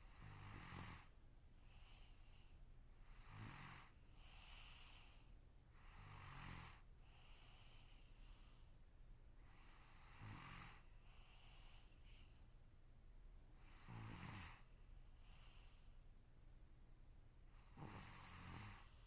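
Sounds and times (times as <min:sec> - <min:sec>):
buzzing snores: 0:00.0 - 0:01.1, 0:03.0 - 0:05.2, 0:05.8 - 0:08.0, 0:09.5 - 0:11.9, 0:13.6 - 0:14.7, 0:17.6 - 0:19.0
soft breaths out: 0:00.1 - 0:08.8, 0:09.4 - 0:12.5, 0:14.5 - 0:16.0.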